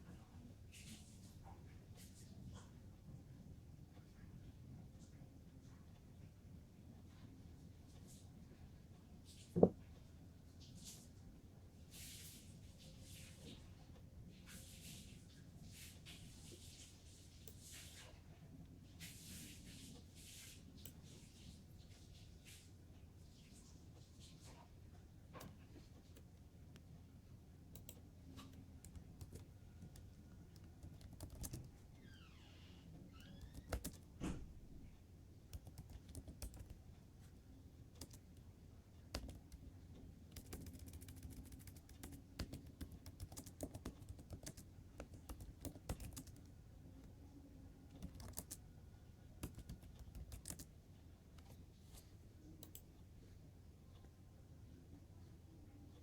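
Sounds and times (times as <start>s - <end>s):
computer keyboard typing: 27.8s - 31.8s, 33.4s - 34.1s, 35.5s - 36.9s, 37.9s - 38.4s, 39.1s - 39.7s, 40.3s - 46.5s, 47.9s - 48.6s, 49.4s - 50.7s.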